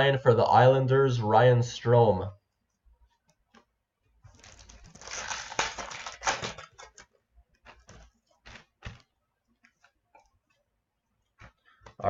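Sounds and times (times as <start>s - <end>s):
foil wrapper crinkling: 4.3s - 9.9s.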